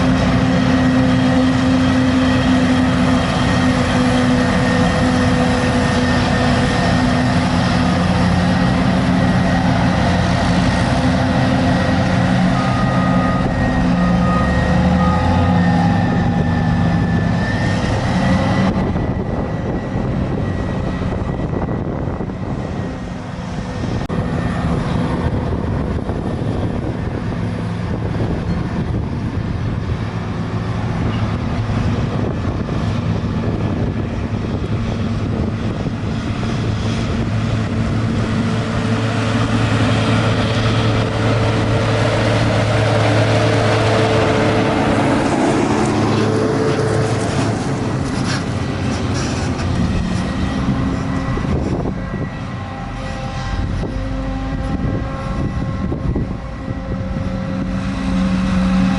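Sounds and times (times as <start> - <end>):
harvester and tractor engines droning: 0.0 - 58.9
high whine: 31.0 - 58.9.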